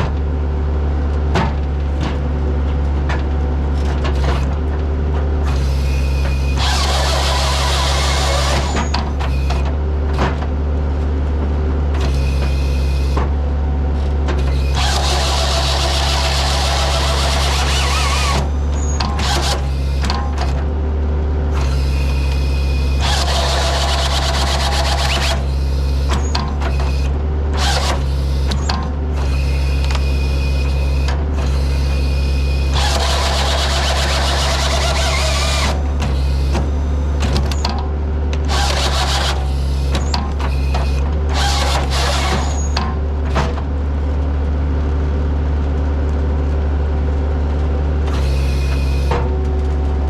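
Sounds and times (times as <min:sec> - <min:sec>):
diesel engine running: 0:00.0 - 0:50.0
machine knocks and clanks: 0:01.2 - 0:05.6
loud mechanical noise bursts: 0:05.4 - 0:10.4, 0:11.9 - 0:20.7, 0:21.3 - 0:43.6, 0:48.0 - 0:49.4.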